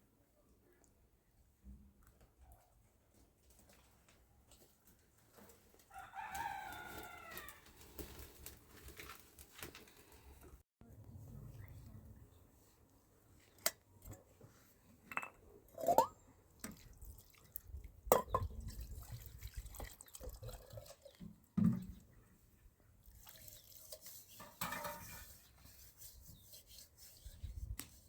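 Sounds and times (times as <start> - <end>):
water dripping: 15.8 - 22.1.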